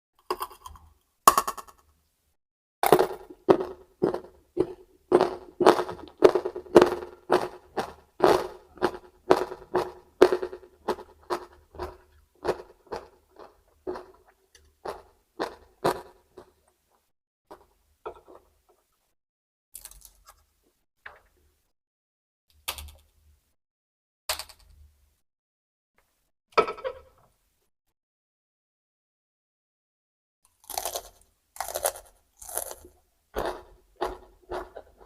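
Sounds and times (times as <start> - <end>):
raw vegetables crunching being chewed: 2.8 - 16.7, 30.5 - 35.0.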